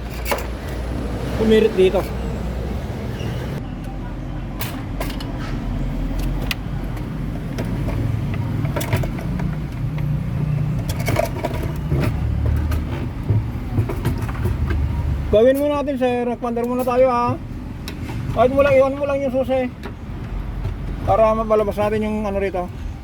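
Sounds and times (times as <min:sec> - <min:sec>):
vehicle engine humming: 0:00.0 - 0:23.0.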